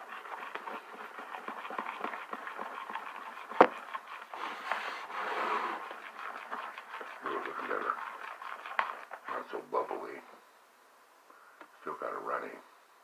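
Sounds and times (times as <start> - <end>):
slime stirred in a bowl: 0.0 - 9.9.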